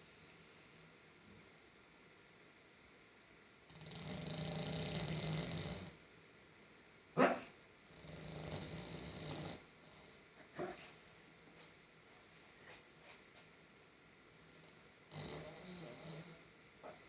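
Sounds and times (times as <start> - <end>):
dog snoring: 3.7 - 6.0, 7.2 - 10.8, 15.1 - 16.5
dog barking in sleep: 7.2 - 7.6, 10.5 - 11.0.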